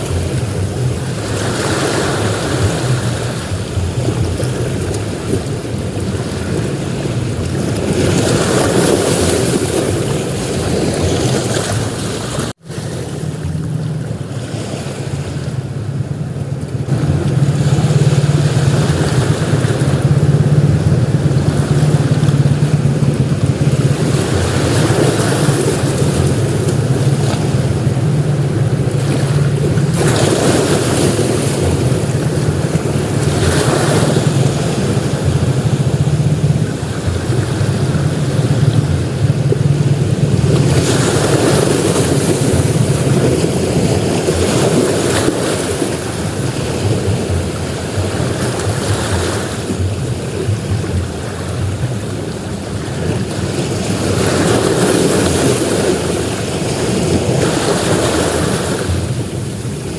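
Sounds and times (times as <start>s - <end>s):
ocean surf breaking: 0.0s - 59.9s
wind noise on microphone: 0.0s - 59.9s
steady low hum: 15.2s - 48.4s.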